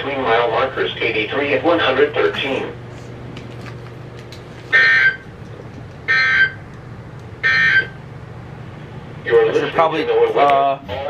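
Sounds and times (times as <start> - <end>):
digital data tone bursts: 7.4 - 7.9.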